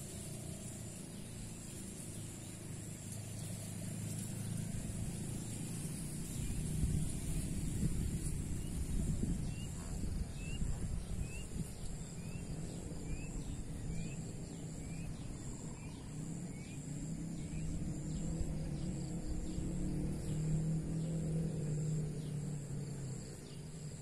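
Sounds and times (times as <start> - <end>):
faint high insect buzz: 0.0 - 24.0
low steady rumble: 0.0 - 24.0.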